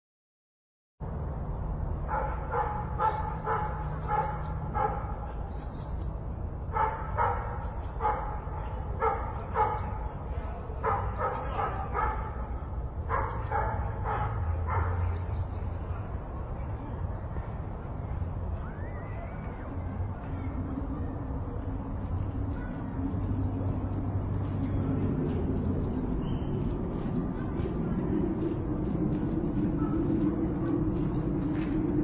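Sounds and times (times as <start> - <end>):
low city park rumble: 1.0 - 32.0
dog barking: 2.1 - 5.3, 6.7 - 10.1, 10.8 - 15.3.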